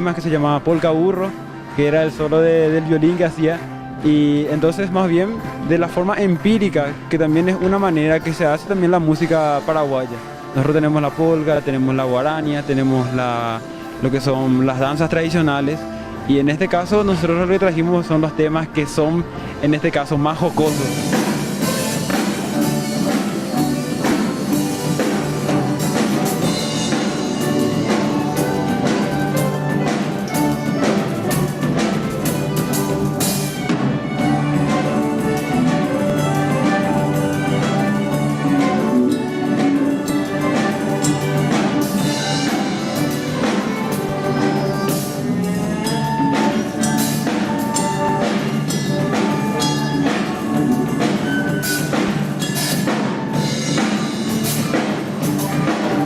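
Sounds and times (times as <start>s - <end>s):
orchestra playing lively music: 0.0s - 56.0s
steady percussion beat: 20.7s - 56.0s.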